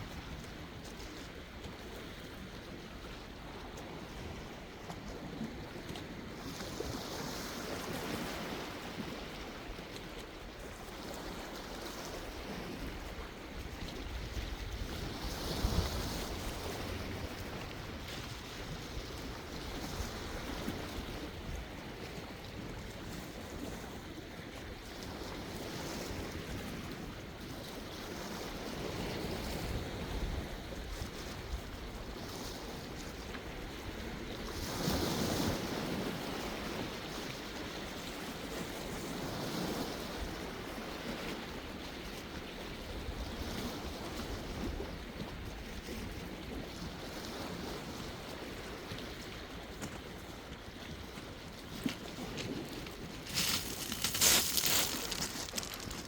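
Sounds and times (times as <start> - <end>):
sea waves washing onto shore: 51.4 - 56.0.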